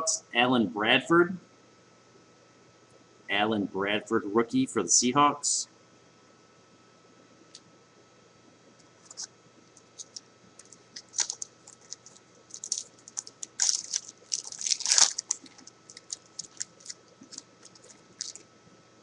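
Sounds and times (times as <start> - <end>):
foil wrapper crinkling: 9.0 - 18.5.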